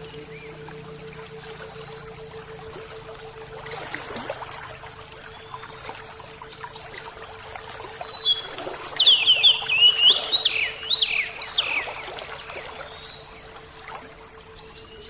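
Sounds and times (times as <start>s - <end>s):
flowing water: 0.0s - 15.0s
bird chirping: 8.0s - 12.0s.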